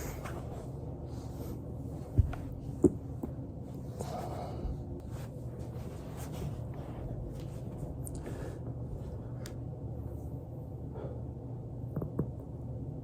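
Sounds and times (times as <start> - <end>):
body rolling on foam roller: 1.8 - 8.0.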